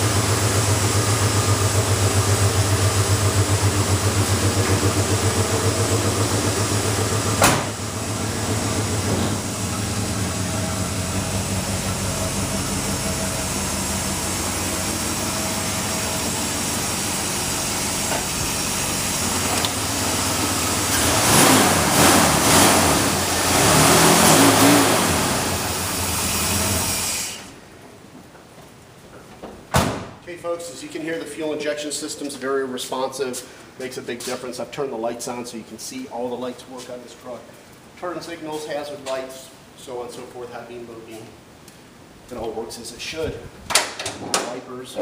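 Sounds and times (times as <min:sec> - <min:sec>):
car engine running and revving: 0:00.0 - 0:27.0.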